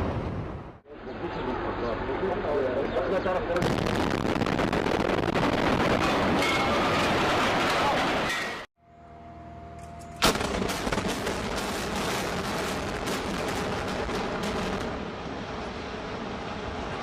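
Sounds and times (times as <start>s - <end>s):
explosive blast: 3.6s - 7.6s, 10.2s - 15.3s
demolition rumble: 3.6s - 8.6s, 10.2s - 17.0s.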